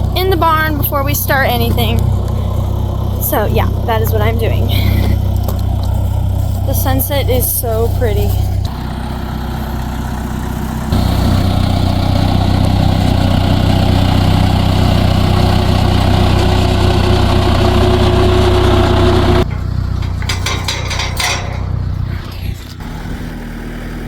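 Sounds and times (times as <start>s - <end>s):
vehicle engine running: 0.0s - 24.0s
clicks and knocks: 19.4s - 22.0s.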